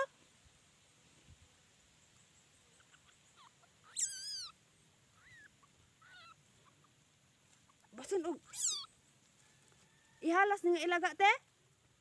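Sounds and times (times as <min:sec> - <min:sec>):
kitten mewing: 0:02.8 - 0:04.5, 0:08.4 - 0:08.9
faint short squeaks: 0:02.9 - 0:04.5.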